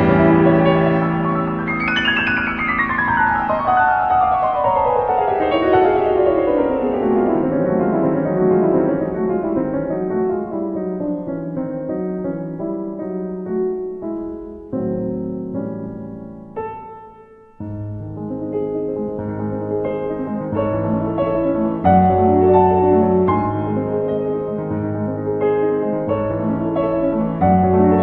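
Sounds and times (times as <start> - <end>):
solo piano music: 0.0 - 28.0.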